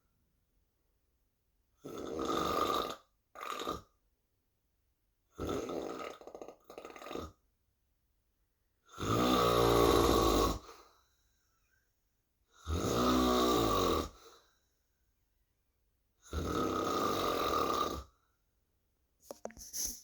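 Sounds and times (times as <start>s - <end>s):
person snoring: 16.3s - 18.1s.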